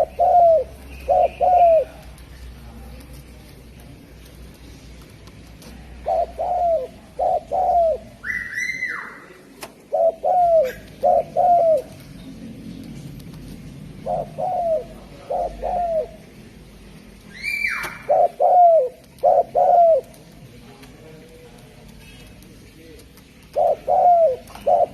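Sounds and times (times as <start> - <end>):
dove cooing: 0.0 - 2.1, 5.8 - 9.0, 9.9 - 12.2, 13.9 - 16.3, 17.4 - 20.4, 23.5 - 24.9.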